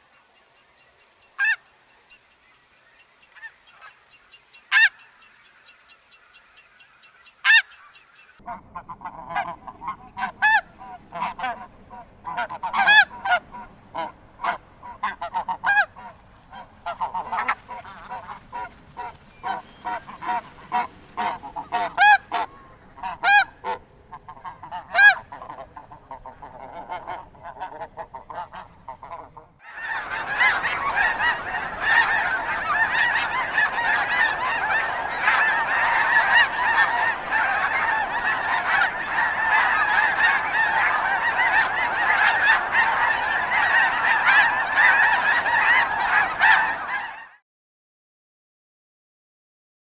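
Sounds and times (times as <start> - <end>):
snow geese honking: 1.2 - 2.2, 3.3 - 47.4.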